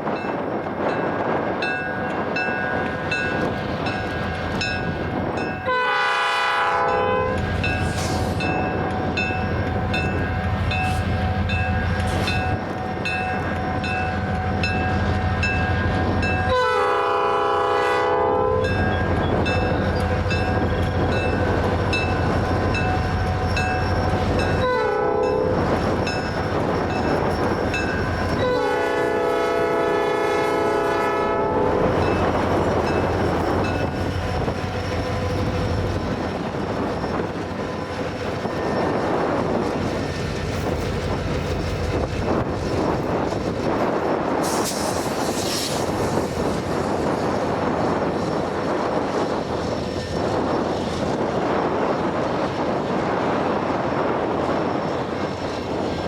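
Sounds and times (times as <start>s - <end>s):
diesel locomotives running: 0.0s - 56.0s
train air horn blasts: 5.6s - 8.4s, 16.5s - 18.7s, 24.6s - 25.5s, 28.4s - 31.9s.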